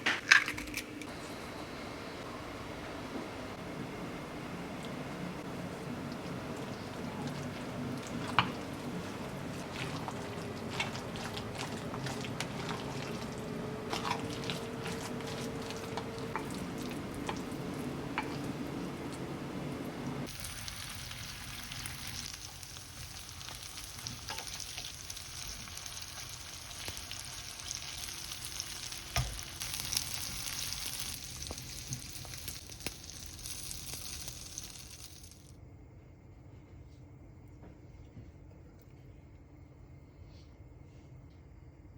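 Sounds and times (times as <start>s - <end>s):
food sizzling in a pan: 20.2s - 35.5s.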